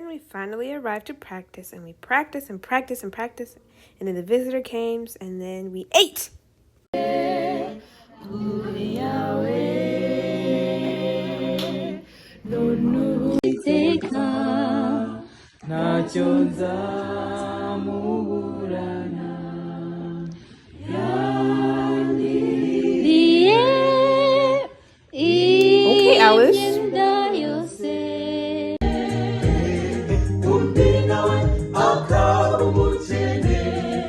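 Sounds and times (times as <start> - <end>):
vocal group singing a cappella: 6.9 - 34.0.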